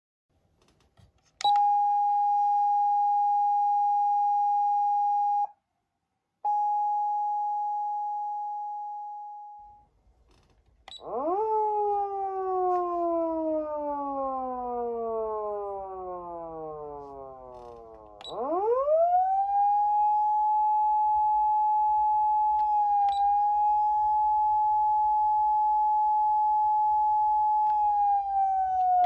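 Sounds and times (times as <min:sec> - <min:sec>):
siren steady single-pitch tone: 0:01.4 - 0:05.6, 0:06.4 - 0:09.8, 0:10.9 - 0:29.0
siren wail: 0:01.5 - 0:05.5, 0:11.0 - 0:29.0.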